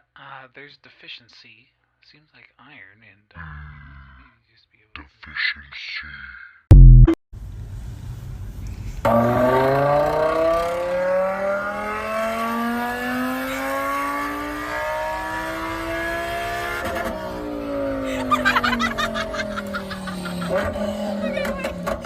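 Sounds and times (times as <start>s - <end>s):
vehicle engine accelerating: 7.4s - 22.0s.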